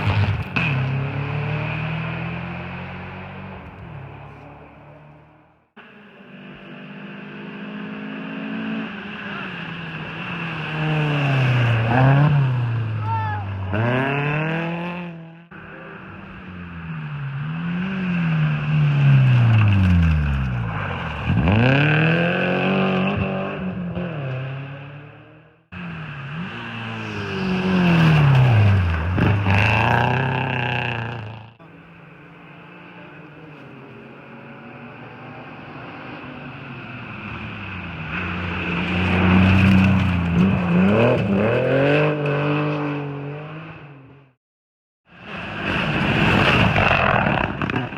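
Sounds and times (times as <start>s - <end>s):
rally car engine revving: 0.0s - 44.2s, 45.3s - 47.9s
car engine revving hard: 13.7s - 15.5s, 26.1s - 31.6s.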